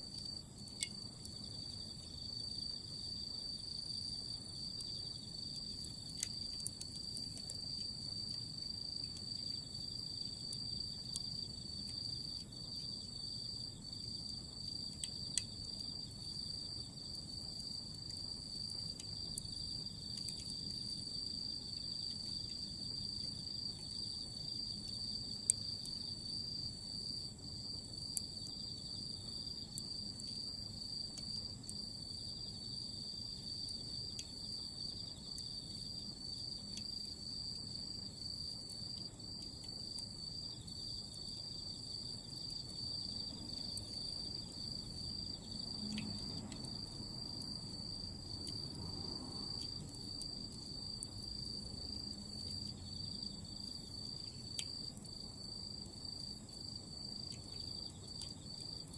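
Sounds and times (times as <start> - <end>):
charcoal embers popping: 0.0 - 26.2
insects trilling: 0.0 - 58.9.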